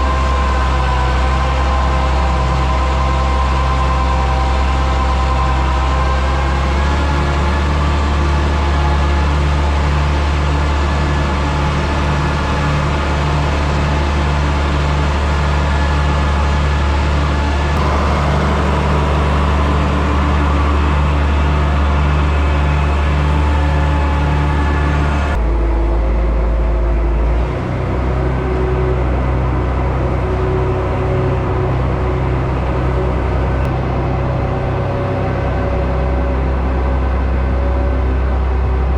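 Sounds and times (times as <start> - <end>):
deep engine hum: 0.0 - 38.9
tractor engine running: 0.0 - 38.9
feed wagon conveyor running: 0.1 - 25.4.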